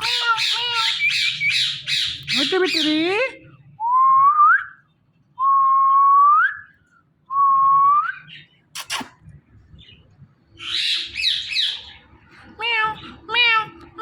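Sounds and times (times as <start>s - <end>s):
harsh raspy parrot call: 0.0s - 2.5s.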